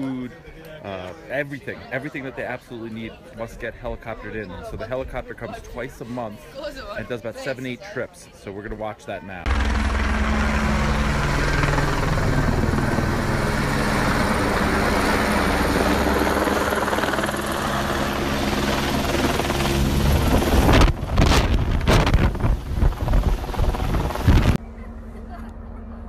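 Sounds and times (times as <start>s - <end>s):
heavy rushing wind noise: 9.5s - 24.6s
helicopter rotor and engine drone: 9.5s - 26.0s.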